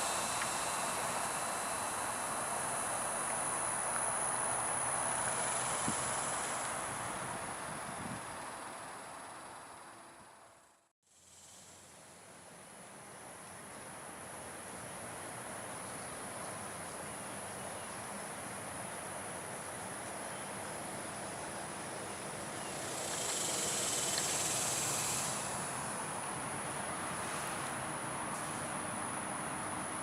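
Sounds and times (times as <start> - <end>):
broad rushing hiss: 0.0 - 8.0, 21.5 - 28.9
insects trilling: 0.0 - 10.3, 15.6 - 30.0.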